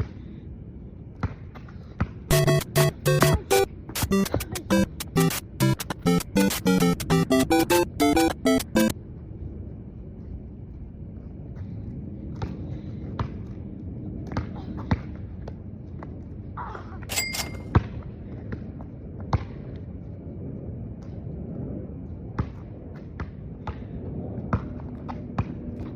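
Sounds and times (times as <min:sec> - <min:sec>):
basketball bouncing on a court: 0:01.2 - 0:02.2, 0:22.4 - 0:25.9.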